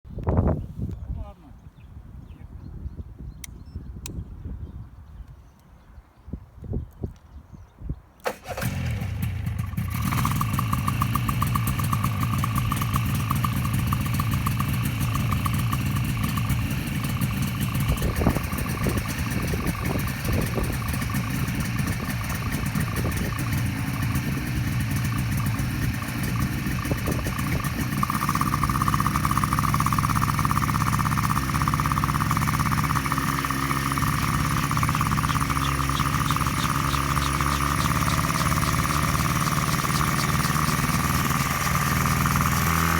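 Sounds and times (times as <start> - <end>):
helicopter engine running: 9.6 - 42.9
steady whine: 33.0 - 42.9.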